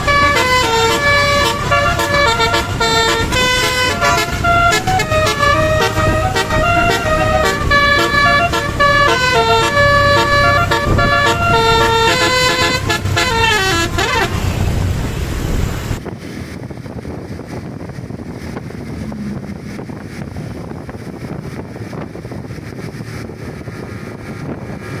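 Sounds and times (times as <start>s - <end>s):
multi-tone bus horn melody: 0.0s - 15.3s.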